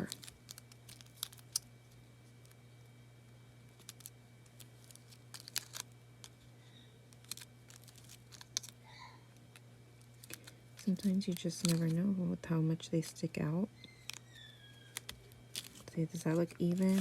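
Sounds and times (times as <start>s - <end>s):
hands handling paper: 0.0s - 2.6s, 3.7s - 6.5s, 7.1s - 8.8s, 9.4s - 12.1s, 13.9s - 17.0s
stickers peeled and pressed: 0.0s - 2.6s, 3.7s - 6.5s, 7.1s - 12.2s, 13.8s - 17.0s
faint low hum: 0.0s - 17.0s.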